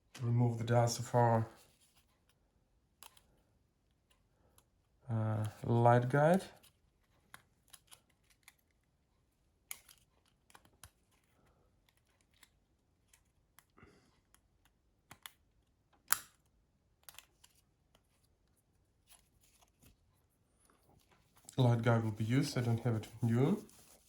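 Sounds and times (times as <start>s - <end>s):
plastic phone parts clicking: 7.2s - 8.8s, 9.6s - 18.0s.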